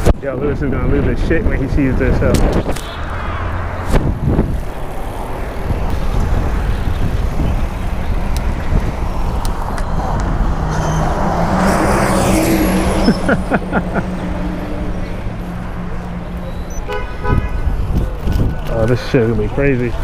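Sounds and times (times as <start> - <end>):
street traffic rumble: 0.0 - 20.0
vehicle passing close: 2.0 - 16.8.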